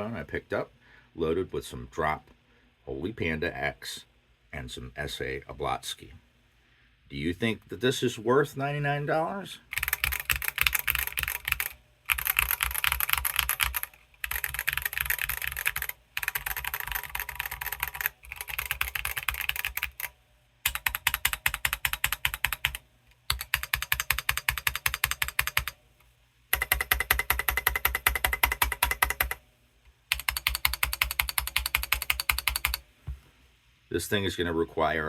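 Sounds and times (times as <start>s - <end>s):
mechanical keyboard typing: 9.7s - 25.8s, 26.5s - 29.4s, 30.1s - 32.8s.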